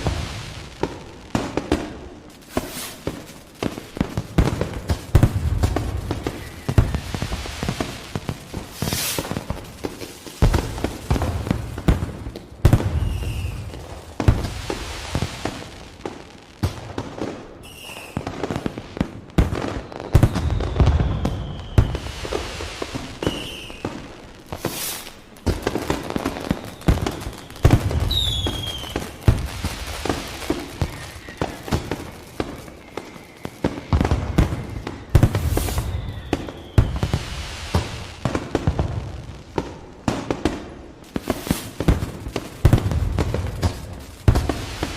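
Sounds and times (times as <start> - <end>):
heavy firework booms: 0.0 - 15.7, 25.4 - 39.3, 41.2 - 44.9
fireworks cracking and popping: 0.0 - 44.9
rushing hiss: 2.4 - 11.6, 21.9 - 38.2, 41.0 - 44.9.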